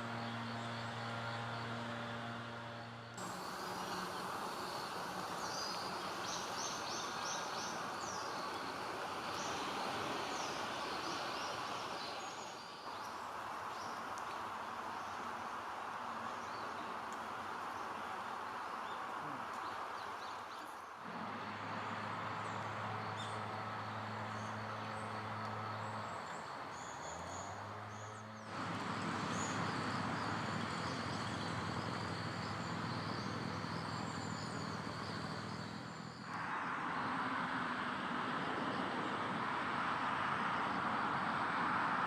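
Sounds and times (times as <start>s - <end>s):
high insect trill: 3.2s - 20.2s.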